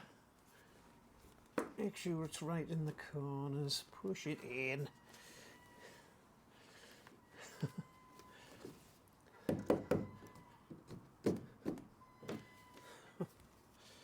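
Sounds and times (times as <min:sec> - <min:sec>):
dull thumps and knocks: 0:09.4 - 0:12.5.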